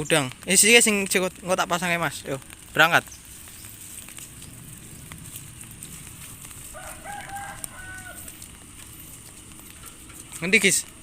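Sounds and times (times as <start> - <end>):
steady background hiss: 0.0 - 11.0
rooster crowing: 6.4 - 8.6.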